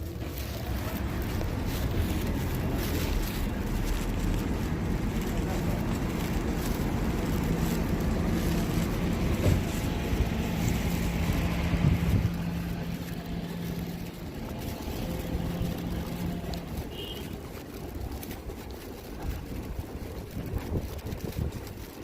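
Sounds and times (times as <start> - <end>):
car engine hum: 0.0 - 22.0
road rumble: 0.0 - 22.0.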